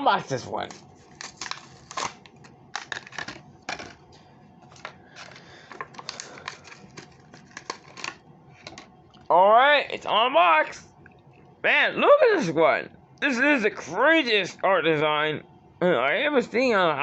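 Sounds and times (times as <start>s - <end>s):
plastic packaging crackling and tearing: 0.6s - 4.0s, 4.6s - 8.9s.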